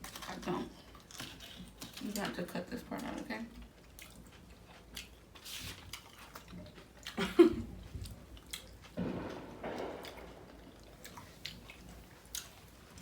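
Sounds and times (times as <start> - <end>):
person chewing: 3.6 - 9.0, 10.0 - 13.0
loud sharp sound: 9.0 - 11.2.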